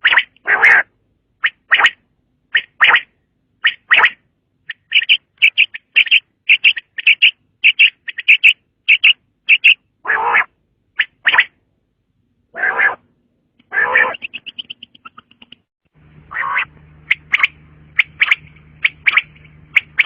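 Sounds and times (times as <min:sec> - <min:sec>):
quail calling: 0:00.0 - 0:11.6, 0:12.5 - 0:15.4, 0:16.3 - 0:20.0.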